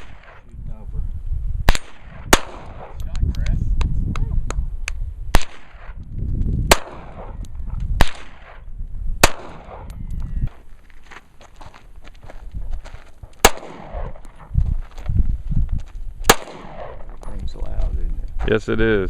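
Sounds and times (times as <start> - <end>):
loud gunshots with echo: 0.0 - 0.4, 1.7 - 3.0, 5.3 - 6.0, 6.7 - 7.4, 8.0 - 9.9, 13.4 - 14.2, 16.3 - 17.1
faint distant gunshots: 1.7 - 3.0, 5.3 - 6.0, 6.7 - 7.4, 8.0 - 9.9, 13.4 - 14.3, 16.2 - 17.2.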